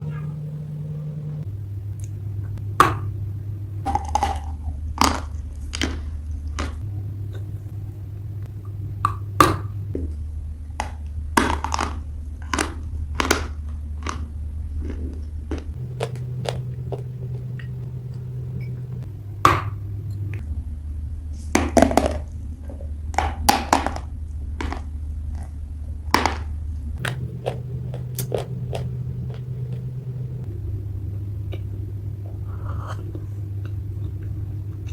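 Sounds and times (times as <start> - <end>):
low drone: 0.0 - 3.9, 6.8 - 10.0, 15.8 - 20.4, 27.0 - 34.9.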